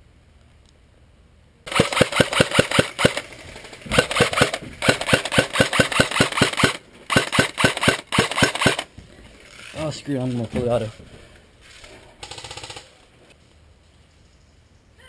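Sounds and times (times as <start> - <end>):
airsoft rifle firing single shots: 1.7 - 3.3, 3.9 - 8.9.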